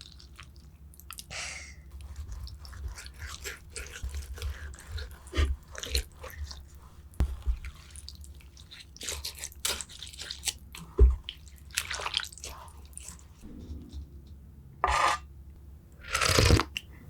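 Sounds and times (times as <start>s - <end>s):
person chewing food: 2.0s - 13.4s.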